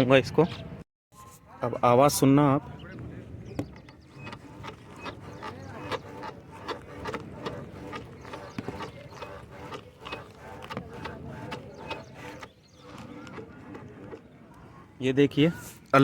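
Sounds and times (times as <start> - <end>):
scooter suspension creaking and squeaking: 2.8 - 16.0.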